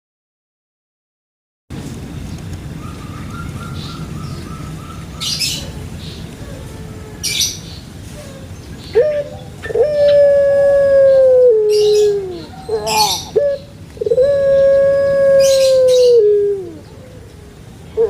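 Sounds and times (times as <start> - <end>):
dove cooing: 4.6 - 18.0.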